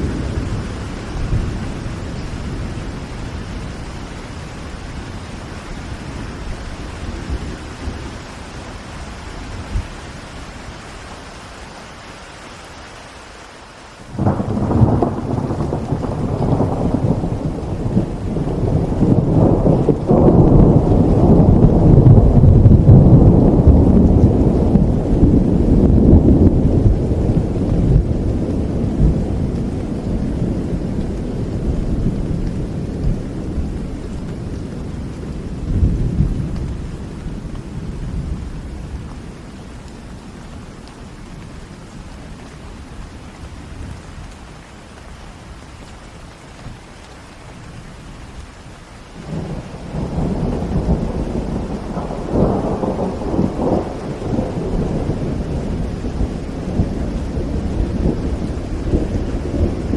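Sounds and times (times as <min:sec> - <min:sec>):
rolling thunder: 0:00.0 - 0:08.3, 0:14.1 - 0:40.4, 0:49.2 - 0:59.9
steady rain: 0:00.0 - 0:59.9.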